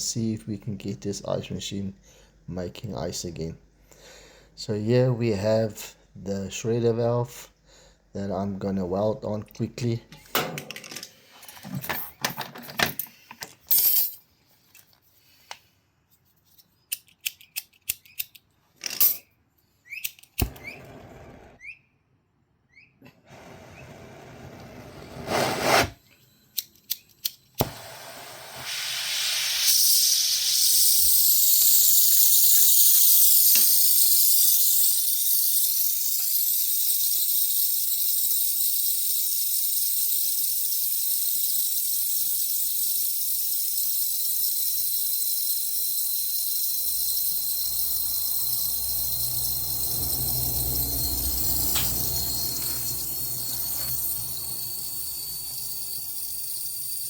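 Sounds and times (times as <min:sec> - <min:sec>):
sharp clicks: 0:16.9 - 0:18.5, 0:20.0 - 0:20.8
gas torch flame hissing: 0:23.2 - 0:26.0, 0:27.6 - 0:39.1, 0:42.6 - 0:57.0.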